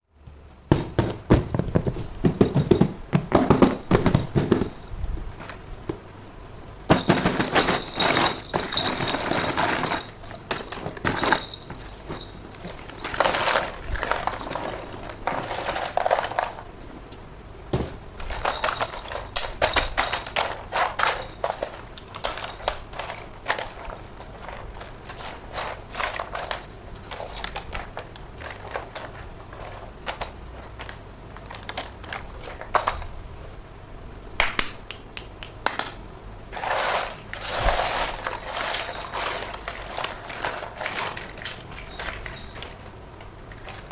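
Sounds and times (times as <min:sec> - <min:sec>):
plastic packaging crinkling: 0:06.9 - 0:16.7, 0:36.5 - 0:43.9.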